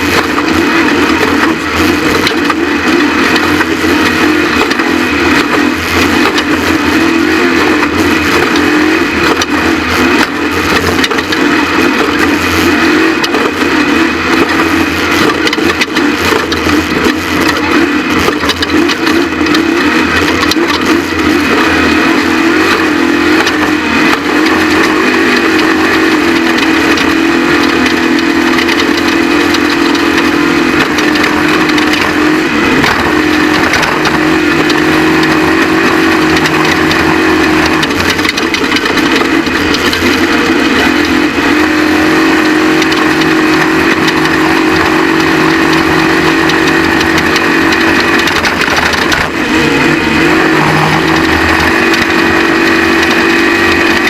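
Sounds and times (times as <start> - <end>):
truck engine running hard: 0.0 - 54.0.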